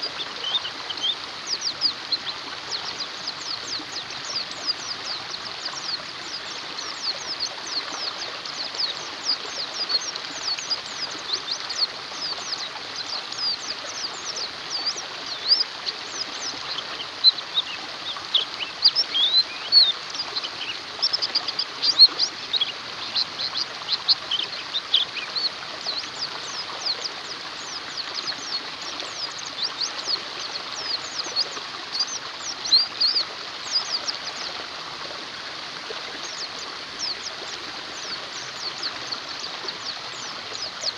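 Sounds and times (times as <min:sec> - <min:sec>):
birds twittering: 0:00.0 - 0:34.5, 0:36.1 - 0:40.9
running water hiss: 0:00.0 - 0:40.9.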